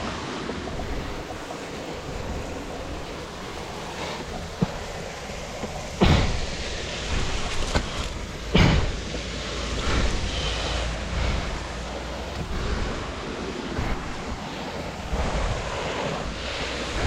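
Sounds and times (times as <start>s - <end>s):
wind buffeting microphone: 0.0s - 17.0s
heavy thumps: 6.0s - 9.2s.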